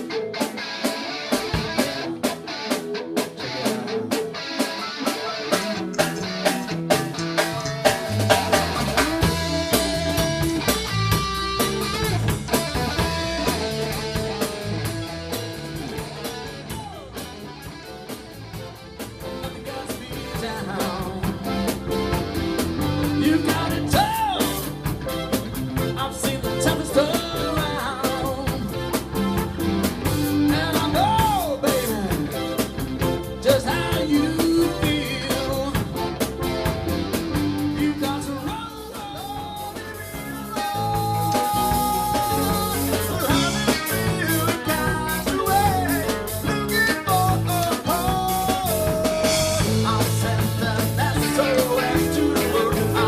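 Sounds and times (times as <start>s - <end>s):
pop-rock band playing live: 0.0s - 53.0s
person singing: 1.2s - 10.4s, 16.5s - 17.4s, 19.2s - 22.1s, 23.0s - 24.9s, 25.8s - 29.0s, 30.3s - 32.7s, 33.3s - 36.3s, 37.6s - 53.0s.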